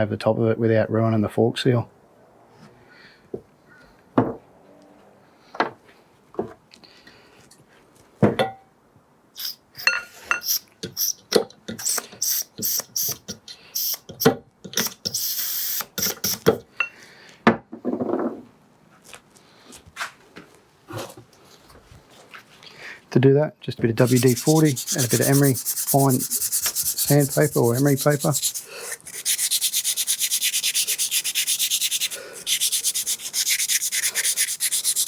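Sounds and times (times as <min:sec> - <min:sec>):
metal tools clinking on workbench: 0:09.8 - 0:10.5
spray can hissing: 0:14.8 - 0:16.5, 0:24.0 - 0:35.0.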